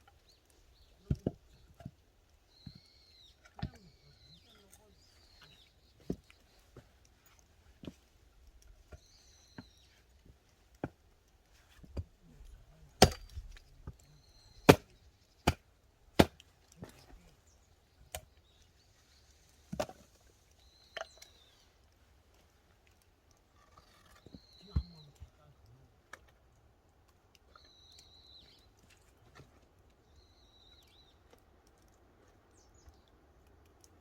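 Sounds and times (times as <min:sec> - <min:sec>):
axe chopping wood: 0:13.0 - 0:14.0, 0:14.6 - 0:16.4.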